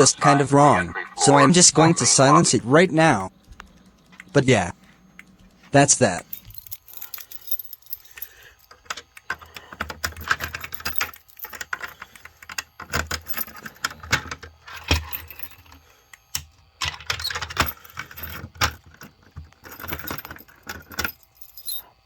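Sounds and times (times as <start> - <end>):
small metal objects jangling: 3.3 - 15.8, 17.1 - 22.0.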